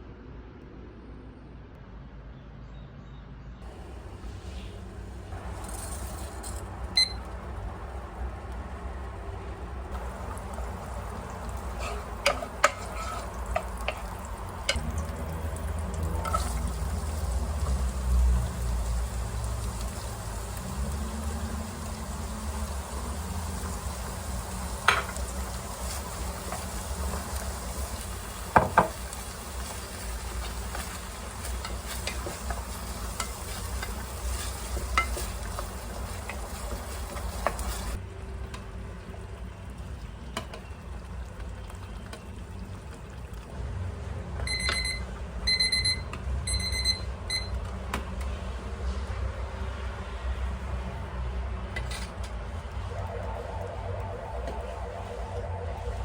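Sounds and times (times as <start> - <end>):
food sizzling in a frying pan: 3.6 - 41.1
utensil knocking on pan: 28.5 - 29.0.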